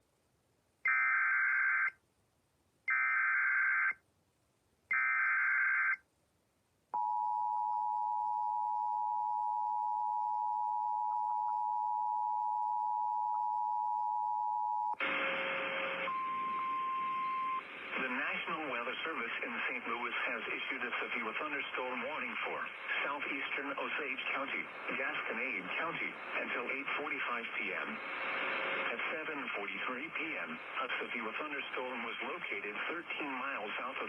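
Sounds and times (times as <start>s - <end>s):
two-tone attention signal: 15.2s - 17.6s.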